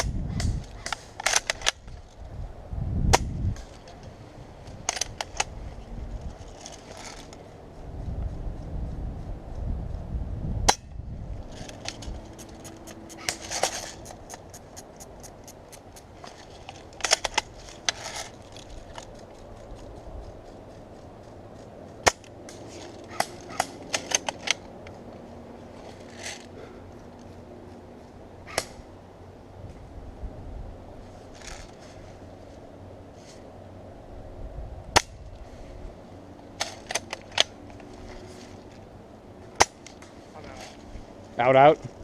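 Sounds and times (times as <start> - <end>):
low rumble: 2.2 - 13.2.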